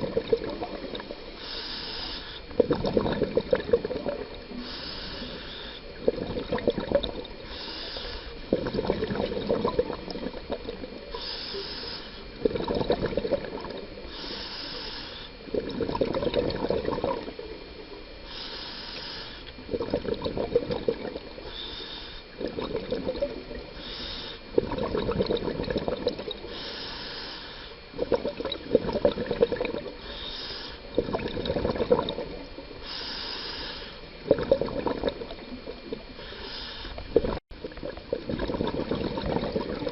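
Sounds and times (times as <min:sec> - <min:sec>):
gurgling exhaled bubbles: 0:00.0 - 0:01.4, 0:02.4 - 0:07.6, 0:08.4 - 0:11.2, 0:12.3 - 0:14.1, 0:15.4 - 0:18.1, 0:19.6 - 0:21.6, 0:22.3 - 0:26.5, 0:27.9 - 0:30.1, 0:30.8 - 0:32.8, 0:34.0 - 0:36.2, 0:37.0 - 0:39.9
regulator inhalation hiss: 0:01.3 - 0:02.6, 0:04.4 - 0:06.0, 0:07.4 - 0:08.5, 0:11.0 - 0:12.4, 0:14.0 - 0:15.5, 0:18.2 - 0:19.6, 0:21.4 - 0:22.4, 0:23.7 - 0:24.5, 0:26.4 - 0:27.9, 0:30.0 - 0:30.9, 0:32.8 - 0:34.1, 0:36.1 - 0:37.1.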